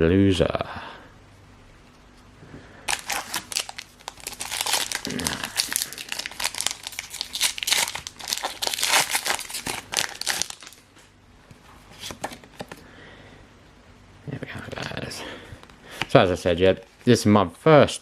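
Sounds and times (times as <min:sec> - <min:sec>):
foil wrapper crinkling: 0:02.9 - 0:10.9.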